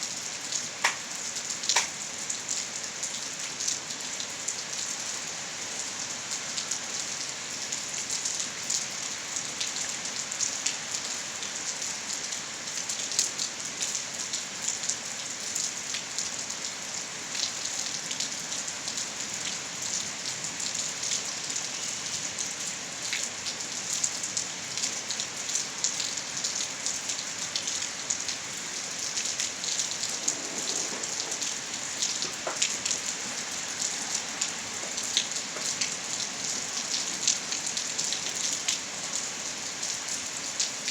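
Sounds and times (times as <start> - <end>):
steady rain hiss: 0.0 - 40.9
raindrops ticking: 0.8 - 1.1, 1.7 - 2.0.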